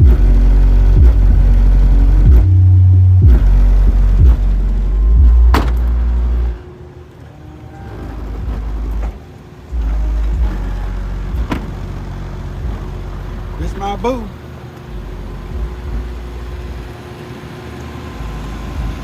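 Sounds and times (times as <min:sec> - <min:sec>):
sharp bass hits: 0:00.0 - 0:06.6, 0:09.7 - 0:14.3, 0:14.9 - 0:16.8
subwoofer playing bass-heavy music: 0:00.0 - 0:06.7, 0:08.1 - 0:17.0, 0:18.2 - 0:19.0.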